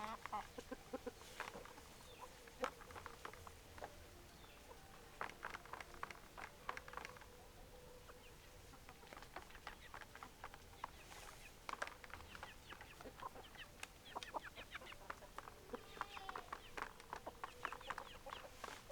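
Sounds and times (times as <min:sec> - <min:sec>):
chickens clucking: 0:00.0 - 0:18.9.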